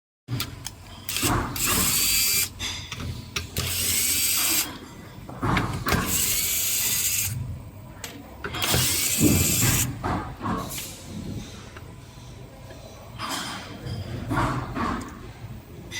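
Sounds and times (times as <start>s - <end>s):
mechanical grinding: 0.5s - 2.6s, 3.4s - 4.8s, 5.8s - 7.4s, 8.6s - 10.0s.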